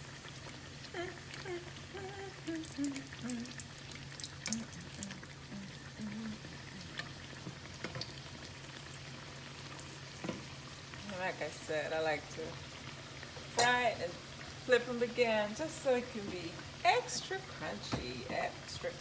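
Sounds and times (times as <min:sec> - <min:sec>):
oil crackles and pops: 0:00.0 - 0:11.2
dough deep-frying in oil: 0:00.0 - 0:19.0.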